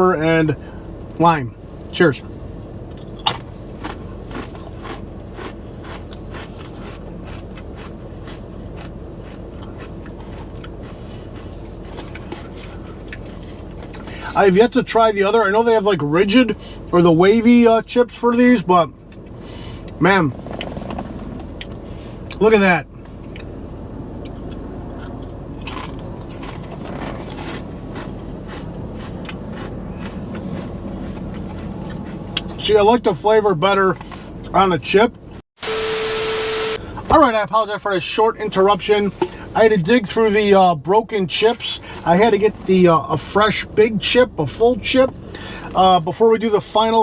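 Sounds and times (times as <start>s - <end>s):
low background rumble: 0.0s - 35.4s, 36.8s - 47.0s
crisps being chewed: 3.4s - 14.1s, 24.2s - 32.6s.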